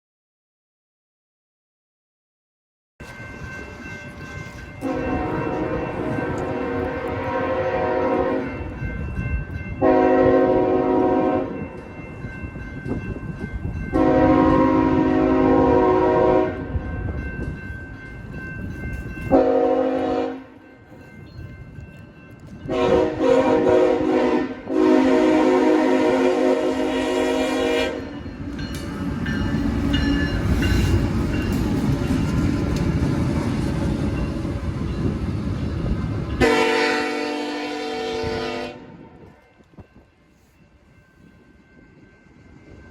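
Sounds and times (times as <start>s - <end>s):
diesel locomotives rumbling past: 3.0s - 42.9s
locomotive air horn blasts: 4.8s - 8.6s, 9.8s - 11.6s, 13.9s - 16.7s, 19.3s - 20.6s, 22.7s - 28.1s, 36.4s - 39.2s.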